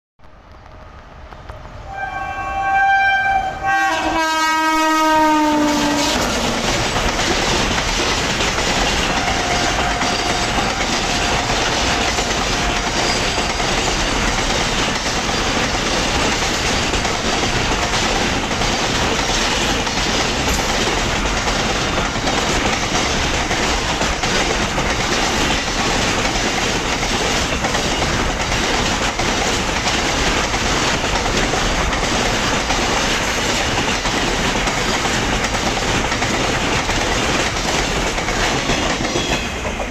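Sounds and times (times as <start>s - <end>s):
freight train horn: 1.8s - 6.6s, 9.0s - 13.5s.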